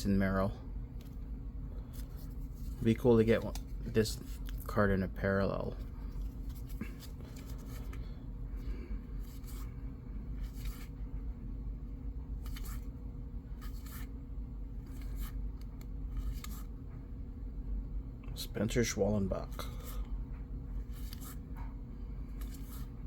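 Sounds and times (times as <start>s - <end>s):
trading cards swishing: 1.8s - 4.6s, 5.8s - 8.1s, 9.2s - 9.7s, 10.3s - 11.0s, 12.4s - 13.0s, 13.6s - 14.2s, 14.8s - 16.7s, 20.8s - 21.6s, 22.3s - 23.0s.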